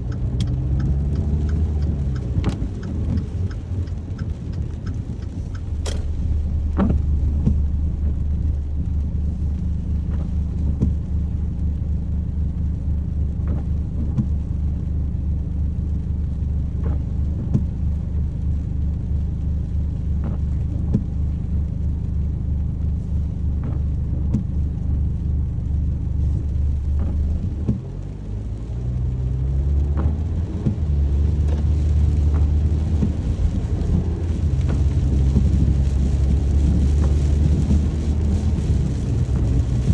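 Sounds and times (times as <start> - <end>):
faint ticks: 0.0 - 6.1
vehicle engine rumble: 0.0 - 39.9.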